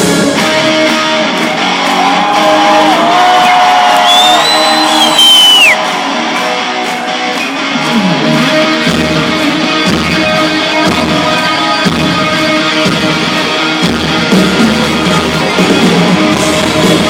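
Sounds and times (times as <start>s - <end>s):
bass and drums: 0.0s - 3.0s, 7.8s - 17.0s.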